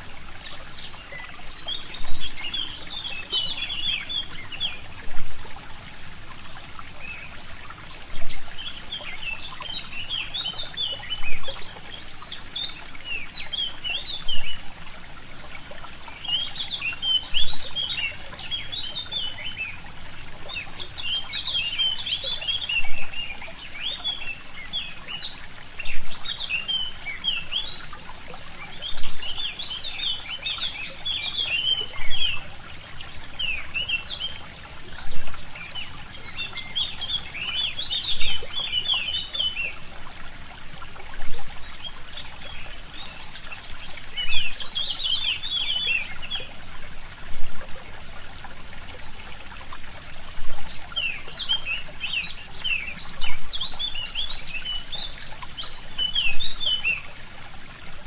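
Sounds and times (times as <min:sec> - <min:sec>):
stream trickling: 0:00.0 - 0:58.0
small birds chirping: 0:15.7 - 0:40.1, 0:40.8 - 0:46.6.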